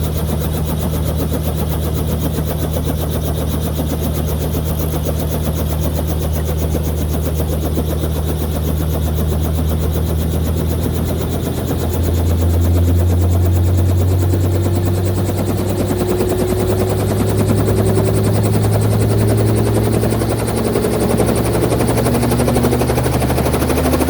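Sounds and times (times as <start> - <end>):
helicopter engine and rotor chop: 0.0 - 24.0.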